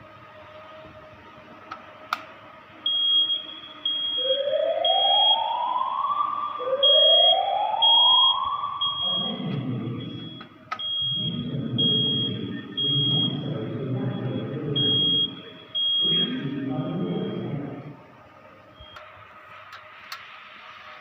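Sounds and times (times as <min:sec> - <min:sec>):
whooping siren tone: 0:02.7 - 0:17.8
fire alarm high beeps: 0:02.8 - 0:17.5
rough low noise: 0:05.6 - 0:21.0.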